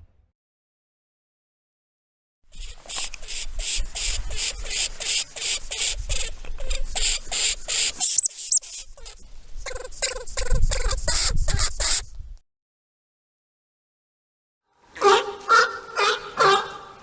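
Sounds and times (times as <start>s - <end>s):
short thin whistles: 2.6s - 8.9s.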